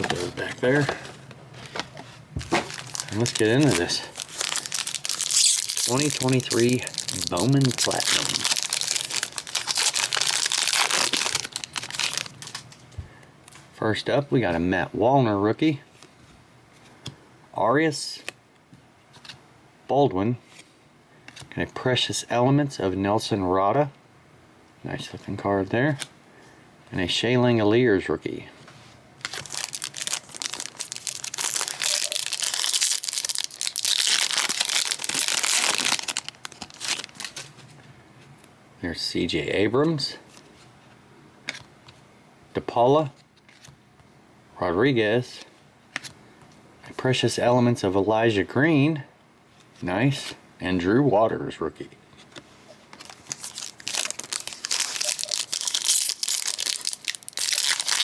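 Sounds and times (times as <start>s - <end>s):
wrapper tearing and crinkling: 2.4s - 12.8s, 29.2s - 37.5s, 53.0s - 58.0s.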